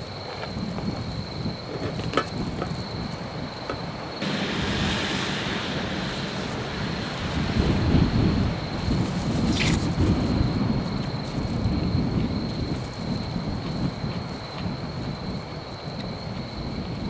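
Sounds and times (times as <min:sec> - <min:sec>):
insect trill: 0:00.1 - 0:16.8
low wind rumble: 0:04.1 - 0:14.2
steady hiss: 0:04.2 - 0:10.7.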